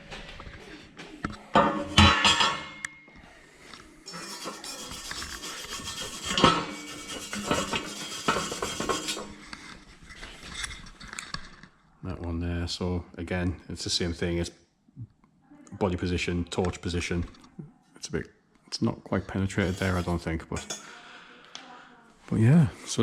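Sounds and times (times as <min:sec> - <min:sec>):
metal scraping and rubbing: 0:04.1 - 0:11.0, 0:19.5 - 0:20.8.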